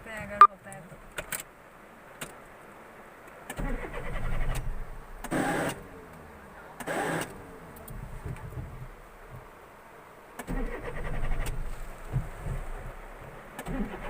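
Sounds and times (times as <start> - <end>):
starter motor cranking engine: 3.5 - 5.9, 10.4 - 11.8, 13.6 - 14.0.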